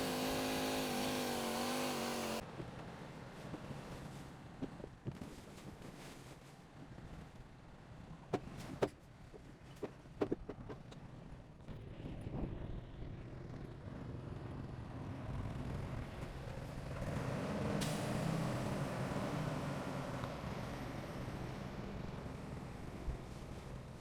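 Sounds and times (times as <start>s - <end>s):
heavy machine diesel engine running: 0.0s - 2.4s.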